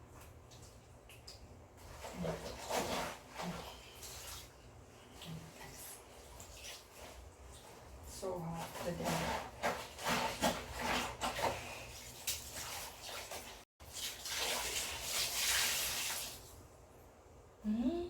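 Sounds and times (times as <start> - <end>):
water splashing in basin: 0.0 - 16.5.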